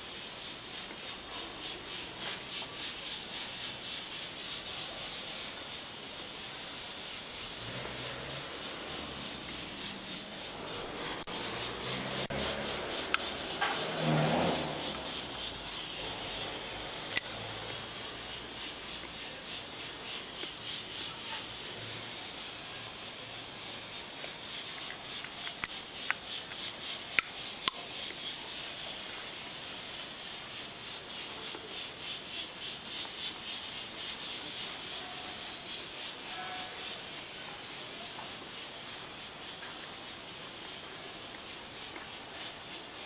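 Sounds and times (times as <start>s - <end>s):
valve lapping grinding: 7.4s - 19.1s, 24.2s - 27.8s.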